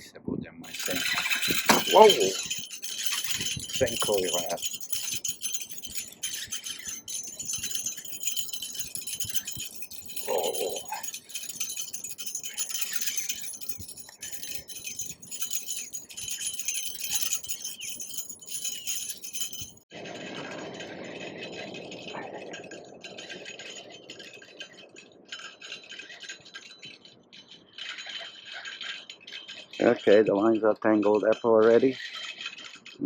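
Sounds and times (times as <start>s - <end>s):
fishing reel ratcheting clicks: 0.7s - 19.8s.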